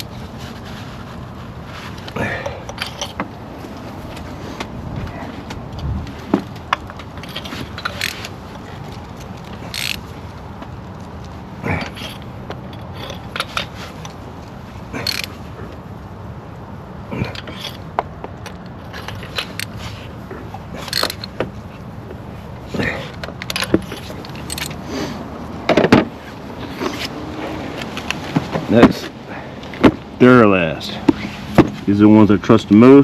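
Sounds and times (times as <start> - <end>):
metal tools scraping: 0.0 - 3.2, 7.1 - 10.1, 11.6 - 14.2, 14.9 - 15.4, 17.2 - 17.9, 18.5 - 21.8, 22.7 - 25.2
metal tools clinking: 1.8 - 3.3, 6.6 - 10.1, 11.7 - 14.2, 14.9 - 15.7, 17.2 - 21.9, 22.7 - 25.2
ratchet clicking: 7.2 - 8.4, 9.2 - 10.0, 15.0 - 15.4, 20.8 - 21.4.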